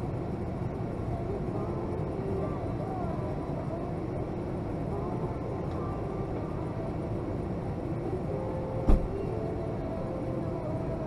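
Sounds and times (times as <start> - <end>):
airliner cabin rumble: 0.0 - 11.0
faint passenger chatter: 0.0 - 11.0
sharp thump: 8.9 - 9.4.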